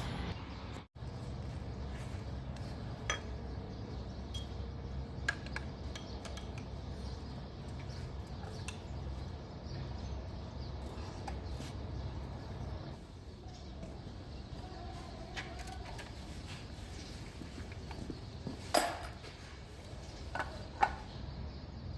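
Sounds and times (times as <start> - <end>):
hand tools clinking on metal: 3.0 - 3.5, 18.6 - 19.3.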